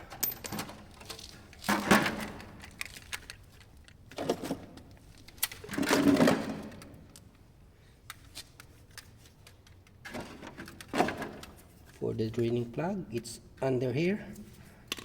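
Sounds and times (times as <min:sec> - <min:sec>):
tools rattling and clattering: 0:00.0 - 0:04.7, 0:05.6 - 0:07.0, 0:10.0 - 0:11.6.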